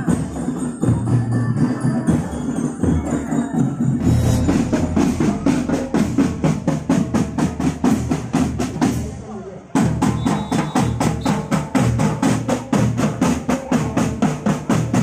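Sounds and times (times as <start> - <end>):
bass drum: 3.8 - 9.0.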